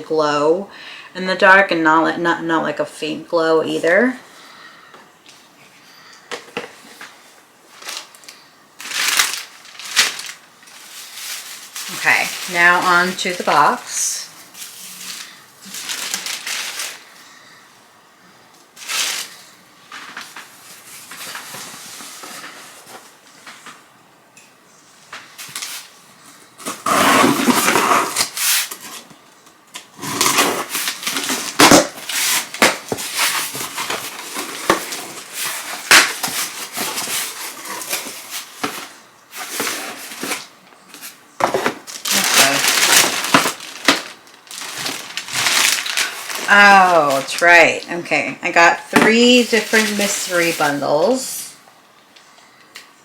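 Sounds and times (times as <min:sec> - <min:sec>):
packaging rustling and tearing: 0:07.7 - 0:17.2, 0:18.8 - 0:23.8, 0:26.6 - 0:29.1, 0:29.8 - 0:47.9, 0:49.0 - 0:51.3.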